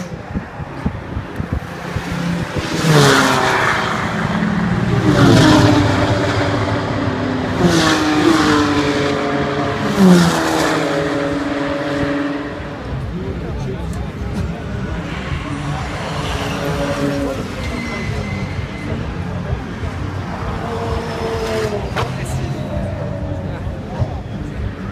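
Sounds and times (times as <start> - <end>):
race cars passing at speed: 0.0 - 24.9.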